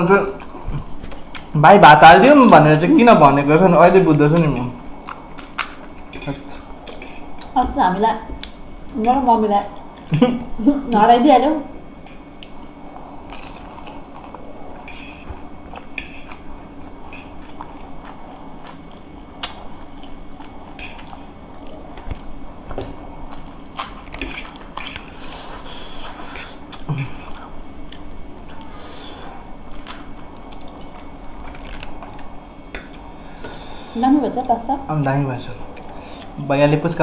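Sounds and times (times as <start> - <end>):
people biting and chewing food: 4.0 - 7.6, 12.0 - 34.0.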